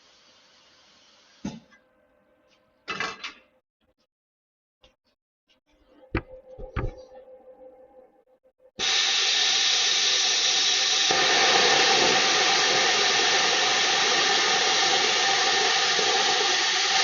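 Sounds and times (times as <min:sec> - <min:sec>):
steady hiss: 0:08.8 - 0:17.0.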